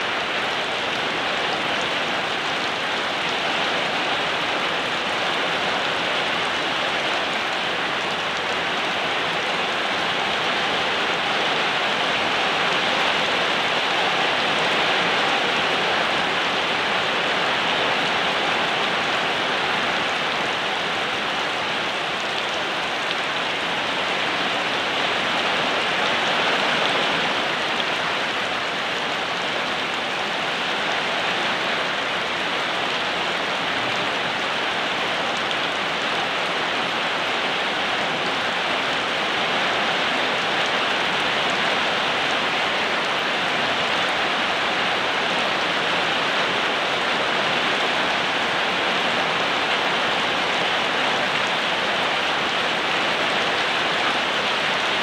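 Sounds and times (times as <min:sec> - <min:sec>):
steady rain: 0:00.0 - 0:55.0.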